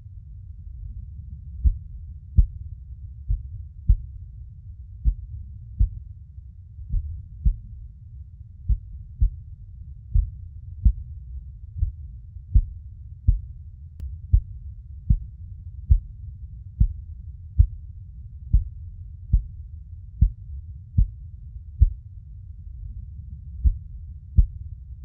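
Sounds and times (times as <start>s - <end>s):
steady low rumble: 0.0s - 25.0s
heartbeat thumps: 1.6s - 4.2s, 5.0s - 6.0s, 6.8s - 7.8s, 8.6s - 9.5s, 10.1s - 13.6s, 14.3s - 16.2s, 16.8s - 17.8s, 18.5s - 19.6s, 20.2s - 21.2s, 21.8s - 22.0s, 23.6s - 24.7s.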